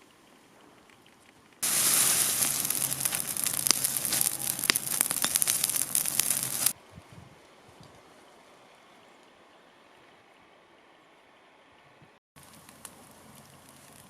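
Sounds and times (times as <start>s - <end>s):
bonfire crackling and popping: 0.2s - 6.8s, 12.4s - 14.0s.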